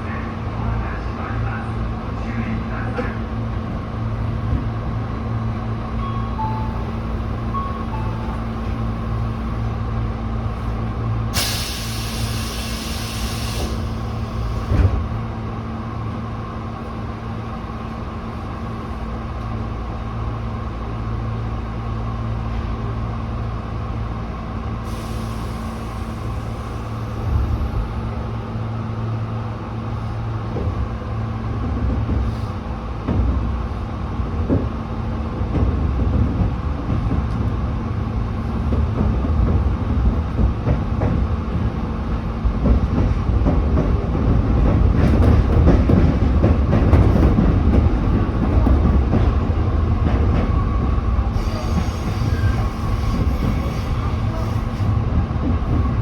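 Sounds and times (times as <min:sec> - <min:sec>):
train pulling away rumbling: 0:00.0 - 0:21.6, 0:22.6 - 0:33.0, 0:34.8 - 0:56.0
train equipment hum: 0:00.0 - 0:56.0
air brakes hissing: 0:11.4 - 0:14.9, 0:24.8 - 0:27.2, 0:32.2 - 0:32.6, 0:51.4 - 0:54.9.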